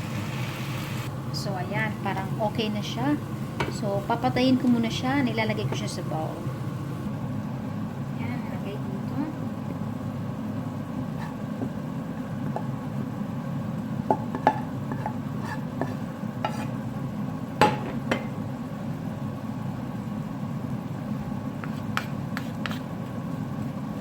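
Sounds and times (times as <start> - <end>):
steady low hum: 0.0 - 24.0
utensil scraping a pan: 11.1 - 11.4, 14.9 - 16.8, 21.6 - 22.9.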